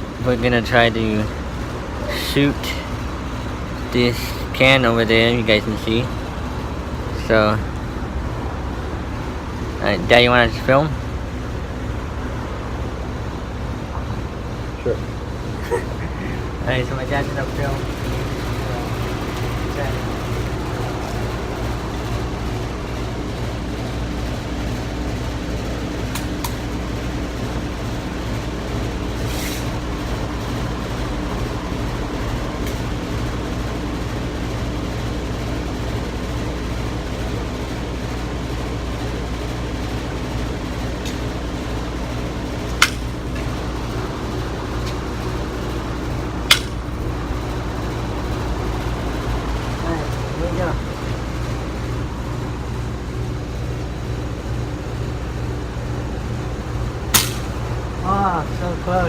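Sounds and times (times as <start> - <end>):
low background hum: 0.0 - 59.0
pellet gun cracks: 42.8 - 43.2, 46.5 - 46.8, 57.1 - 57.6.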